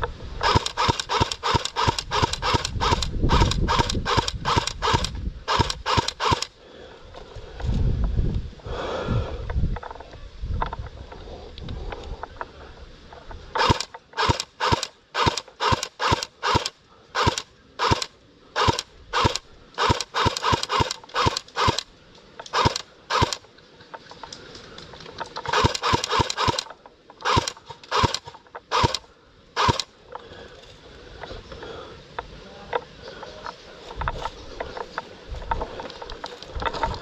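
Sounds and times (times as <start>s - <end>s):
airsoft rifle shots: 0.4s - 6.5s, 13.6s - 21.9s, 22.5s - 23.4s, 25.4s - 29.0s, 29.6s - 29.9s.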